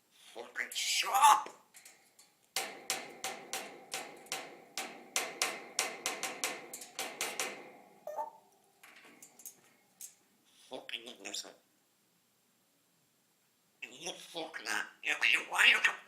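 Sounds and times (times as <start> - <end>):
parrot knocking clicks: 2.6 - 8.2.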